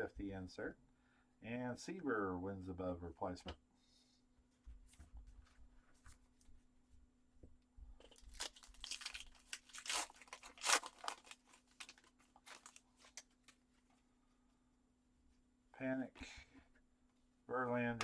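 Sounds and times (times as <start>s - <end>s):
foil wrapper tearing and crinkling: 8.0s - 13.6s.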